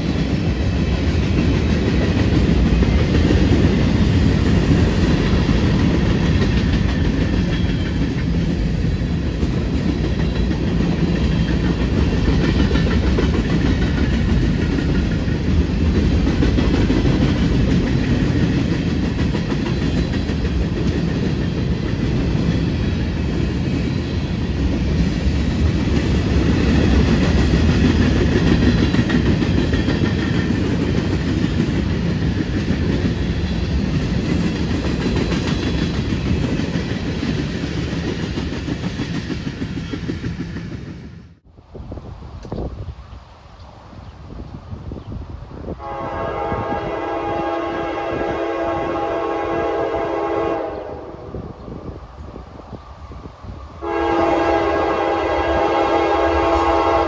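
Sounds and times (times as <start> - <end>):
clickety-clack of rail joints: 0.0 - 41.3
train wheels rumbling on rails: 0.0 - 57.0.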